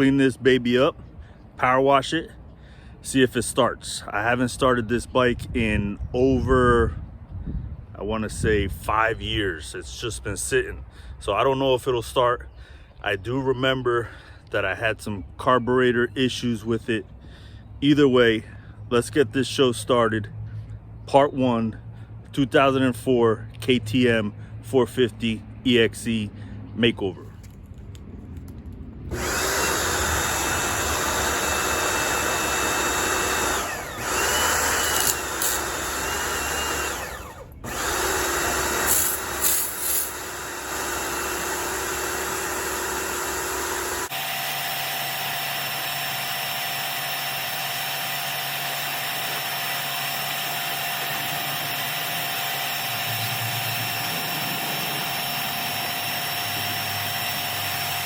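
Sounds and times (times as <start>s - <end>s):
machine hum: 29.0s - 58.0s
motor-driven tool running: 29.1s - 58.0s.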